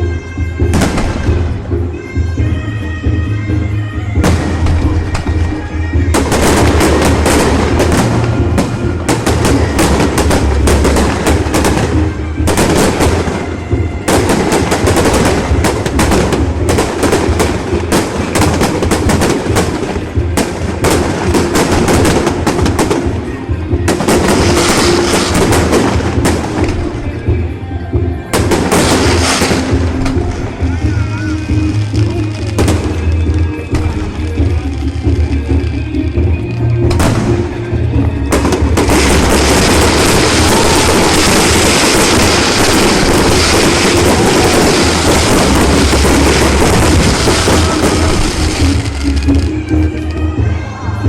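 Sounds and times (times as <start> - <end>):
music playing: 0.0 - 51.0
fireworks banging: 0.6 - 2.2, 4.2 - 27.6, 28.2 - 50.3.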